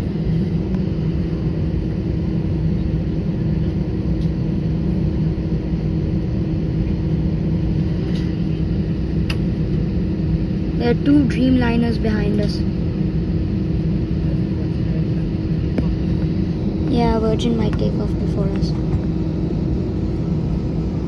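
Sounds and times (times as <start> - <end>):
airliner cabin rumble: 0.0 - 21.0.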